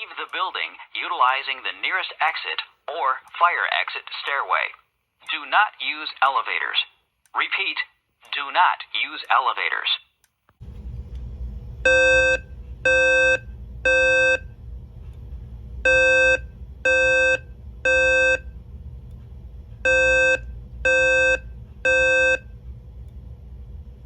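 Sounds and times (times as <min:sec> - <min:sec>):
steady low hum: 0:10.6 - 0:24.0
fire alarm beeps: 0:11.8 - 0:14.6, 0:15.8 - 0:18.6, 0:19.8 - 0:22.6.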